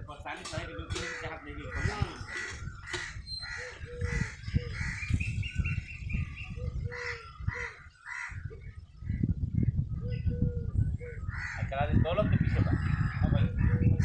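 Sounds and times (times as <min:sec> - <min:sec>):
crows cawing: 0:00.8 - 0:05.1, 0:06.8 - 0:08.5, 0:11.0 - 0:14.0.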